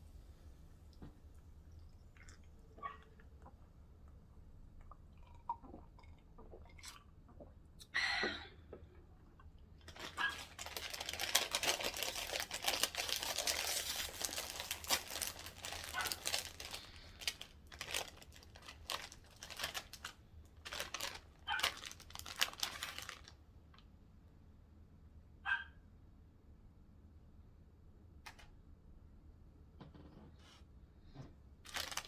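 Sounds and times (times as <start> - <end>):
food wrapper crinkling: 9.8 - 23.4, 31.7 - 32.0.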